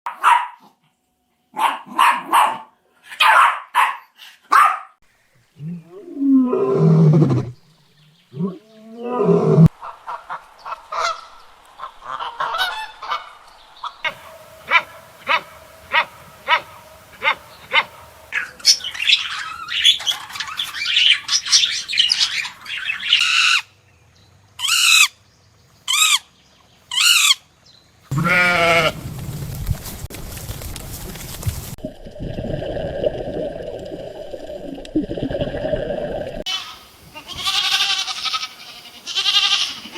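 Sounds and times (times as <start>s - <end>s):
honking calls of geese: 14.1s - 18.8s, 36.5s - 39.9s
drawn-out bleat or moo: 28.1s - 29.0s, 36.5s - 39.9s.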